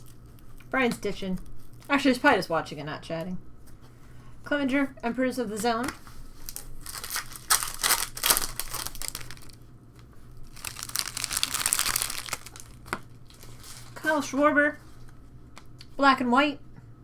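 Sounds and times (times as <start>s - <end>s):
wrapper tearing and crinkling: 0.0s - 0.8s, 1.4s - 2.0s, 6.3s - 9.6s, 10.4s - 14.0s.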